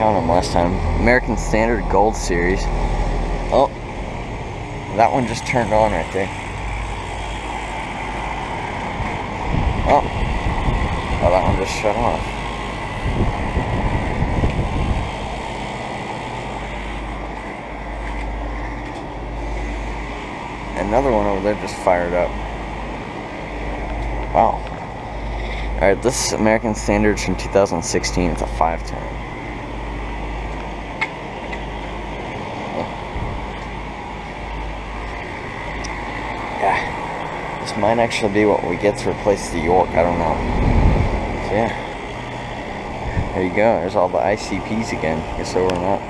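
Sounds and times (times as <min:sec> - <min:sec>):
air conditioner units humming: 0:00.0 - 0:46.0
low rumbling: 0:00.0 - 0:46.0.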